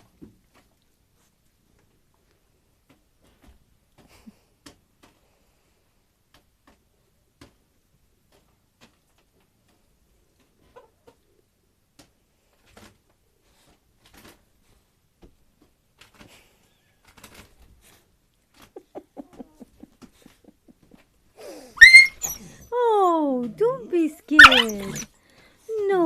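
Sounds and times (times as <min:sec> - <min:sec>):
dog whimpering: 0:21.4 - 0:22.8, 0:24.3 - 0:25.1
dog yelping: 0:21.8 - 0:22.7, 0:24.3 - 0:25.1.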